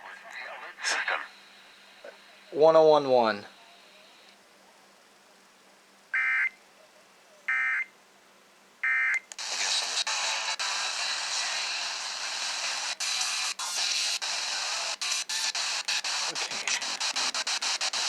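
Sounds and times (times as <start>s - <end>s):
loud steady hiss: 9.4s - 18.0s
harsh buzzing data bursts: 12.6s - 18.0s.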